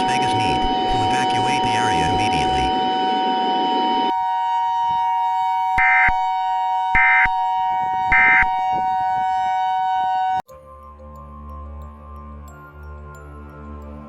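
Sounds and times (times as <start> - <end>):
digital data chirps: 0.0 - 3.8
two-tone alert tone: 7.0 - 7.5.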